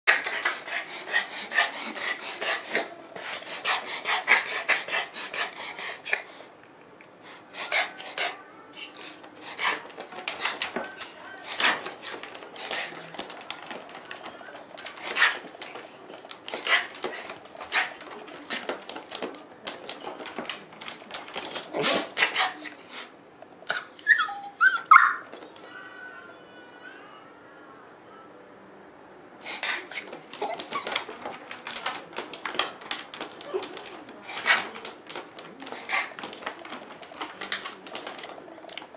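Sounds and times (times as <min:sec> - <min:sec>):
dog rasping breaths: 0:00.1 - 0:06.5, 0:09.0 - 0:10.8, 0:29.4 - 0:31.0.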